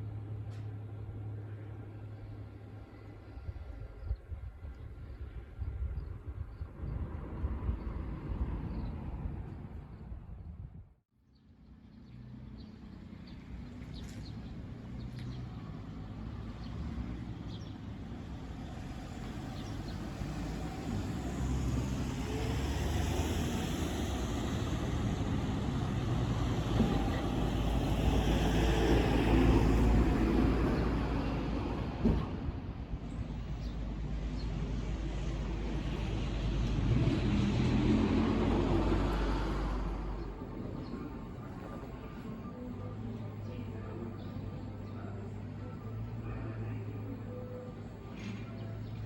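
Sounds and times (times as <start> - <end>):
large vehicle rumbling: 11.6 - 49.0.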